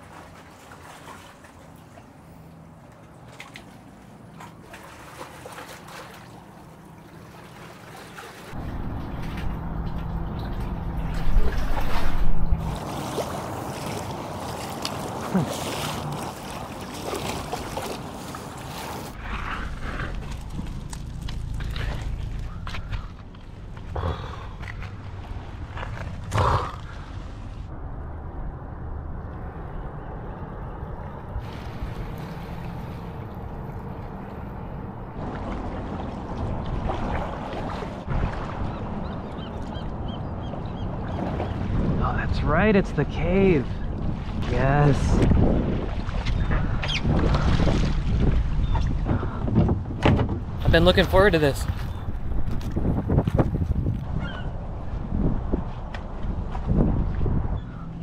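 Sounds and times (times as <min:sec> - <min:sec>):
boat motor humming: 0:00.0 - 0:58.0
wind rumbling on microphone: 0:08.5 - 0:15.4, 0:19.0 - 0:58.0.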